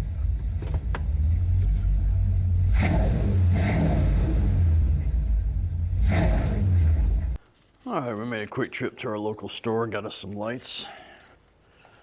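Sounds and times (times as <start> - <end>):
car engine and road rumble: 0.0 - 7.4.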